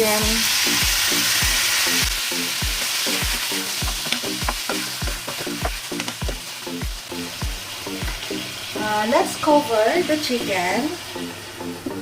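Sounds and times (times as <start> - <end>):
chicken frying in oil: 0.0 - 11.0
music with thumping beat: 0.8 - 8.4.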